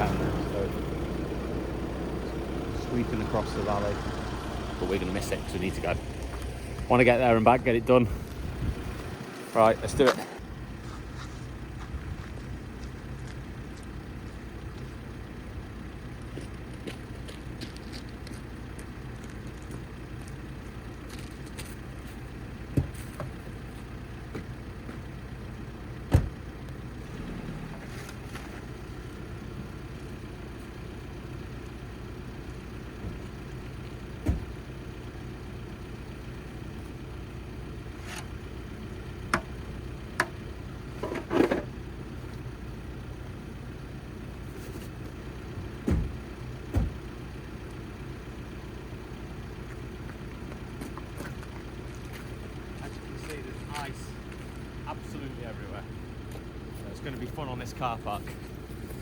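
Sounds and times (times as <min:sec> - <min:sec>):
road noise: 0:00.0 - 0:59.0
van engine drone: 0:00.0 - 0:59.0
sharp knocks and rattles: 0:45.6 - 0:47.1.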